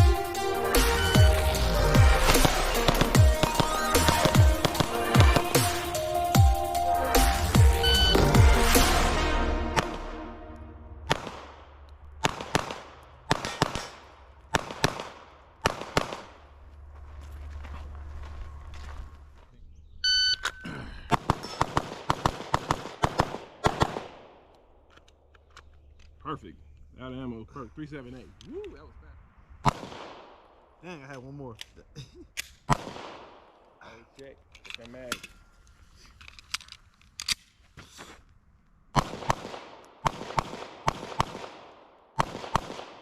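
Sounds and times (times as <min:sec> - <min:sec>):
rapid pistol shots: 0:02.0 - 0:05.6, 0:11.1 - 0:16.4, 0:21.1 - 0:24.4, 0:29.6 - 0:30.4, 0:32.6 - 0:33.6, 0:39.0 - 0:43.0
shot timer beep: 0:07.8 - 0:08.3, 0:20.0 - 0:20.6.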